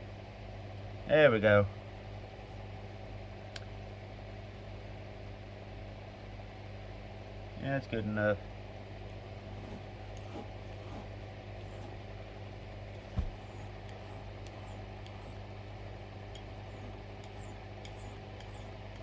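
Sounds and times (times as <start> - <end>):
low mechanical hum: 0.0 - 19.0
dull thump: 13.1 - 13.6.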